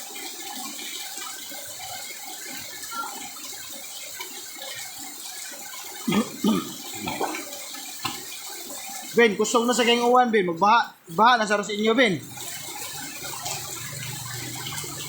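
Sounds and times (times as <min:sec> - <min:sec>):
water running and splashing: 0:00.0 - 0:15.0
heavy rain pouring: 0:12.2 - 0:15.0.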